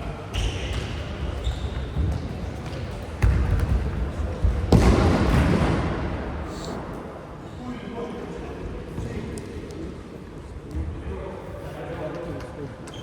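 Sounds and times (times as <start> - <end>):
football kick thuds: 4.5 - 5.8.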